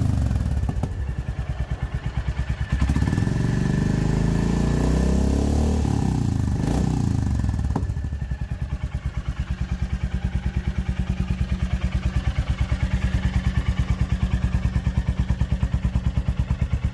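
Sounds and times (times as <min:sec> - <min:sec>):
motorcycle engine idling: 0:00.0 - 0:16.9.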